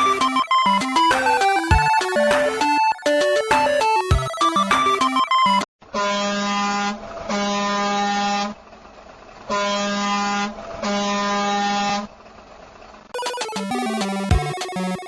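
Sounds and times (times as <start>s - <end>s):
truck horn honking: 9.5s - 12.1s.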